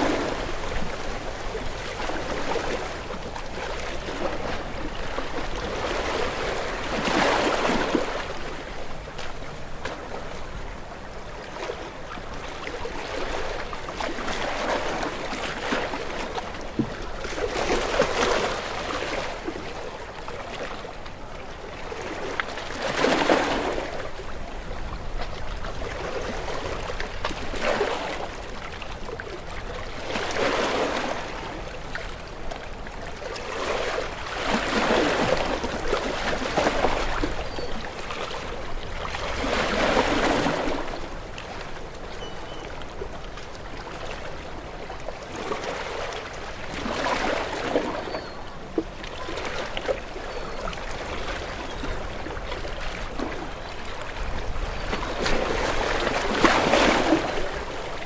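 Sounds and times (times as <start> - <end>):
waves washing in: 0.0 - 19.8, 33.4 - 42.3, 49.2 - 58.0.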